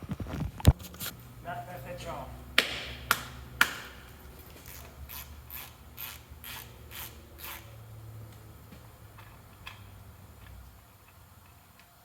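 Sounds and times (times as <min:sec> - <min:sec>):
ratchet wrench clicking: 0:04.5 - 0:07.8.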